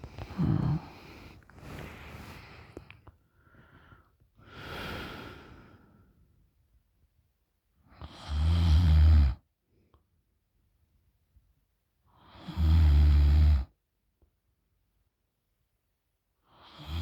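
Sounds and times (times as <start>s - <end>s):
woman breathing through mouth: 0.0s - 6.0s
woman snoring: 0.1s - 1.9s.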